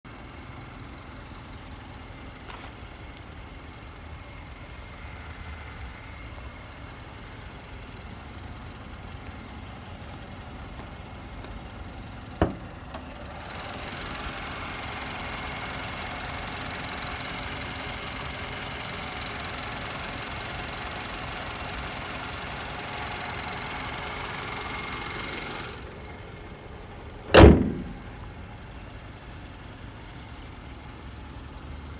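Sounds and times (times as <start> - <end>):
car engine idling: 0.2 - 31.9
loud thump: 12.4 - 12.8, 27.3 - 28.3.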